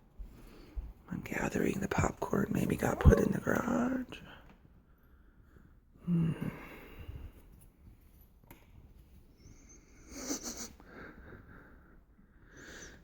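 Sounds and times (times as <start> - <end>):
faint background noise: 0.0 - 13.0.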